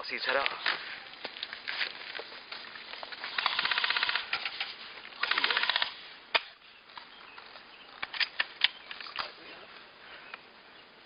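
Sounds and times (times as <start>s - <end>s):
airsoft rifle automatic fire: 3.3s - 4.4s, 5.2s - 5.9s.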